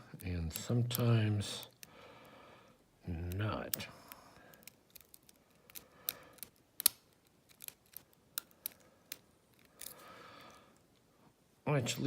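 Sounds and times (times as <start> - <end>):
lock picking metallic clicks: 0.2 - 1.9, 3.1 - 10.0.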